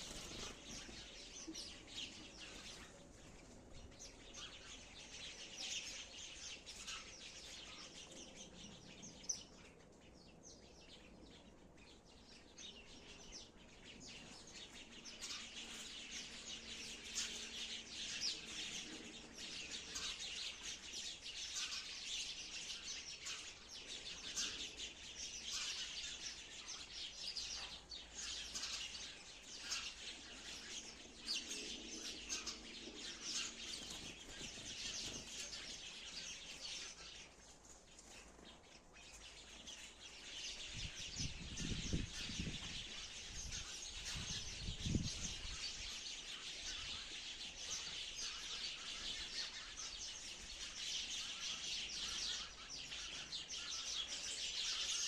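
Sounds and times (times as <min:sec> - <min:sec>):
sparrows chirping: 0:00.0 - 0:55.0.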